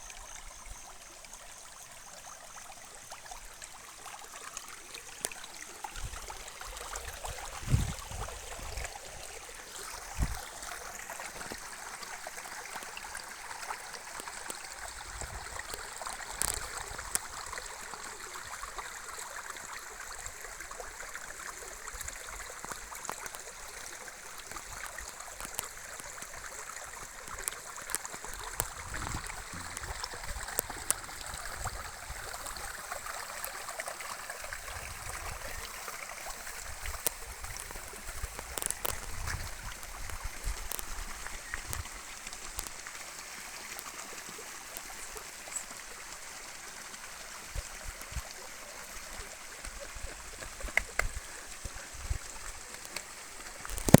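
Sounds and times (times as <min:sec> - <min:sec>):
stream water rushing: 0:02.9 - 0:54.0
sharp clicks: 0:53.7 - 0:54.0.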